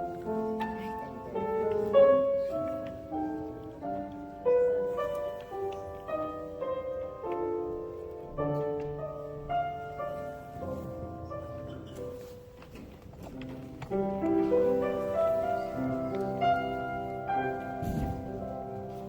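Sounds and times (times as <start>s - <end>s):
slow keyboard music: 0.0s - 19.0s.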